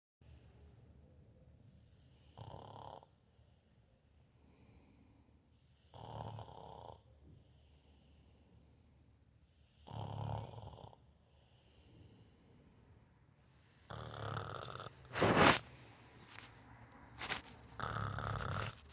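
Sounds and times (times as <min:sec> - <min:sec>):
person snoring: 0:15.2 - 0:15.6, 0:17.2 - 0:18.9.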